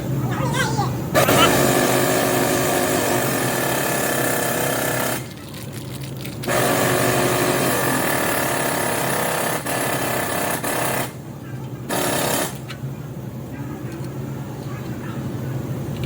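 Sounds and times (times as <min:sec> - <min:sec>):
power wrench running: 0:01.2 - 0:05.4, 0:06.2 - 0:11.2, 0:11.9 - 0:12.7.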